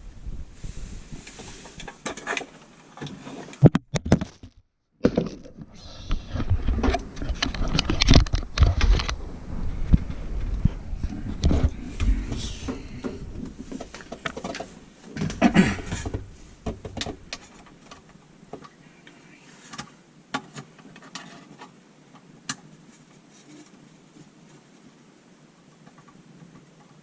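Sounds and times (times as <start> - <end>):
low rumble: 6.1 - 14.2.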